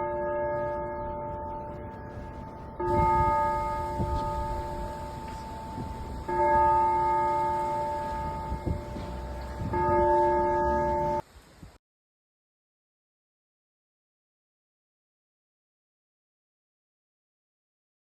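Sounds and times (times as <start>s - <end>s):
church bell tolling: 0.0s - 11.2s.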